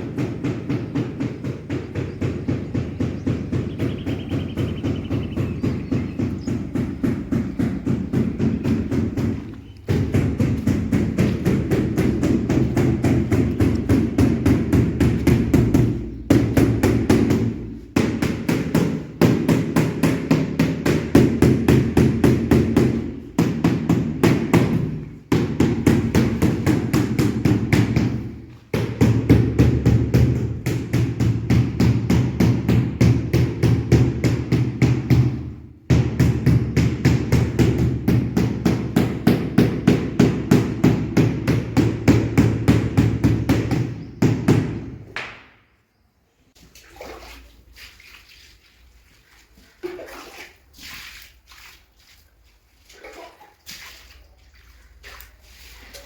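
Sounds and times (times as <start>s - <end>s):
rapid hammer-like tapping: 0.0s - 44.9s.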